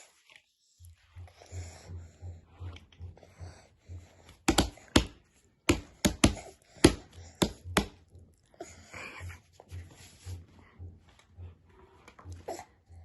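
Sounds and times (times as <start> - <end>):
soft scattered noises: 6.4 - 13.0.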